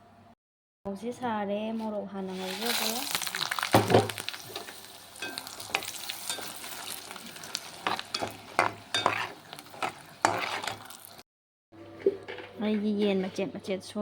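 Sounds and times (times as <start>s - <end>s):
chillies sizzling in oil: 2.2s - 11.2s
spatula scraping a pan: 4.3s - 11.2s.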